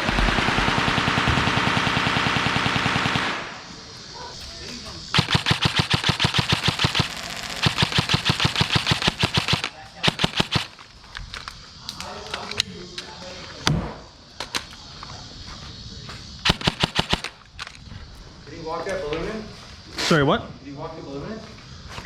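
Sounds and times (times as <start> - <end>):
airsoft rifles firing: 0.0 - 11.4, 16.4 - 17.8.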